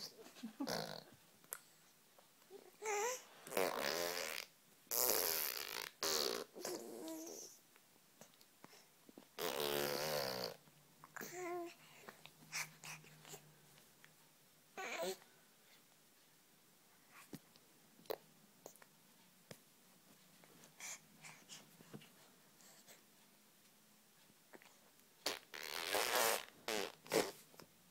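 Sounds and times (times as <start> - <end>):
baby girl babbling: 2.5 - 3.2, 11.2 - 11.8, 14.8 - 15.2.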